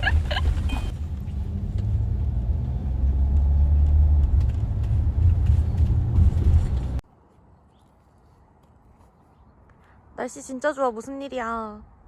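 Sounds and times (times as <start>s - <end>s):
car cabin rumble: 0.0s - 7.0s.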